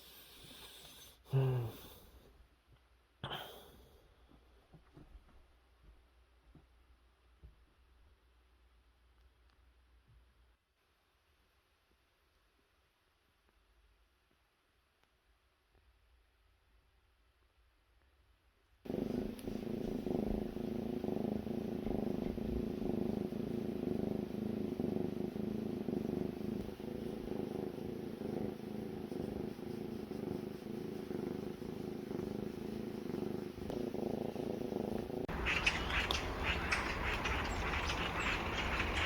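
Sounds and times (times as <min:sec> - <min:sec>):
cat snoring: 0:00.0 - 0:02.0, 0:18.9 - 0:39.0.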